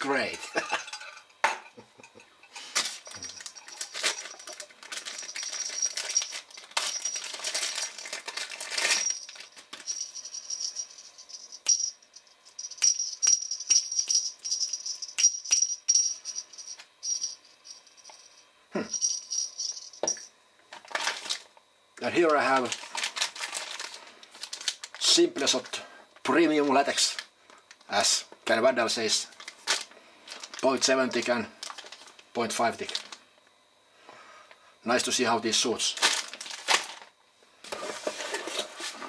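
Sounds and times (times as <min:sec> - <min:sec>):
faint high ringing tone: 0:00.0 - 0:21.3
small hard objects rattling: 0:02.8 - 0:10.4, 0:20.0 - 0:21.5, 0:22.3 - 0:25.1, 0:29.4 - 0:32.2, 0:36.0 - 0:37.1.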